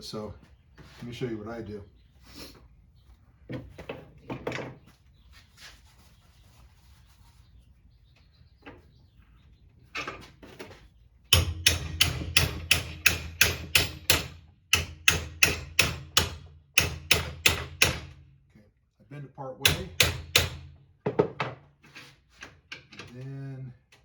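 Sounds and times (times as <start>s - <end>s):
hammer striking metal bracket: 11.3s - 18.2s, 19.6s - 20.7s.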